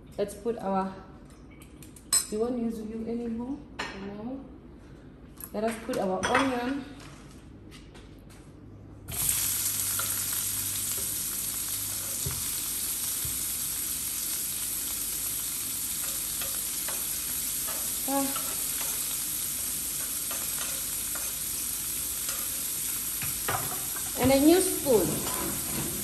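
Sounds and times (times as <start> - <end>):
onion frying in hot oil: 9.1 - 26.0.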